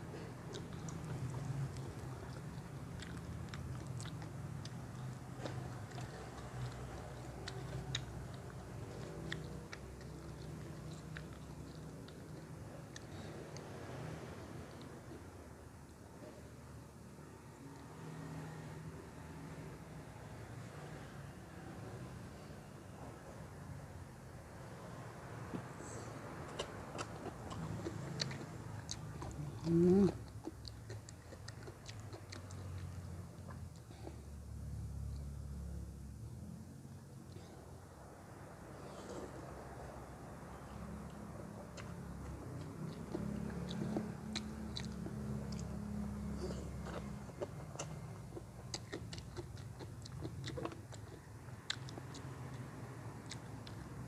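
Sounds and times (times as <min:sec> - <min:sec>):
chewing crunchy raw vegetables: 0:00.0 - 0:15.4, 0:25.4 - 0:35.8, 0:38.6 - 0:54.0.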